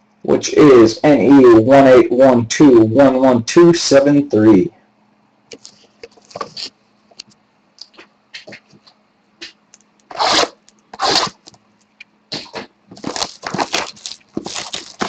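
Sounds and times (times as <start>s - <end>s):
faint low hum: 0.0s - 15.0s
loud scrapes: 10.1s - 11.4s
cardboard and wrapper rustling: 12.4s - 15.0s.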